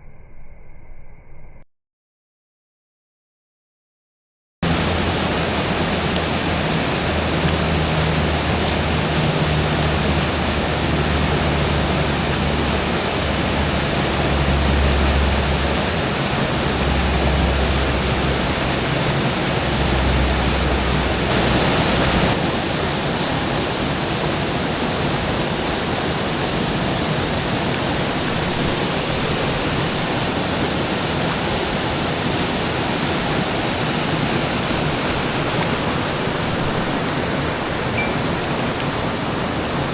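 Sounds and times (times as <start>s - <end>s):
rushing stream water: 4.6s - 39.9s
low rumble: 7.0s - 22.8s.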